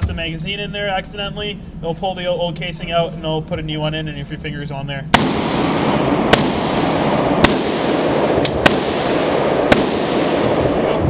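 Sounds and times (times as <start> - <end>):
gunshots: 5.1 - 11.0.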